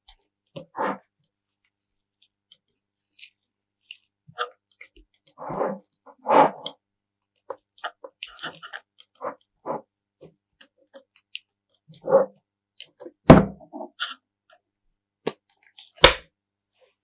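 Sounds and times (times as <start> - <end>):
sharp loud thumps: 13.3 - 13.6.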